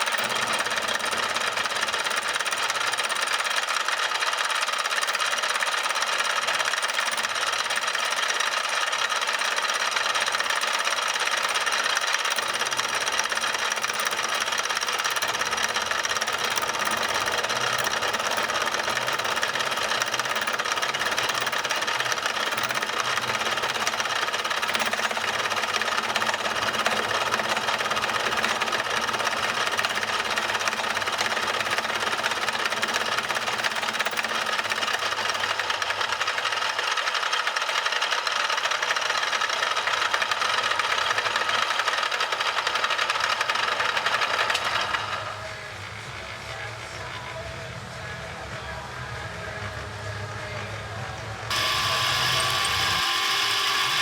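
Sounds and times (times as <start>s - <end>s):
power tool running: 0.0s - 50.6s, 51.4s - 54.0s.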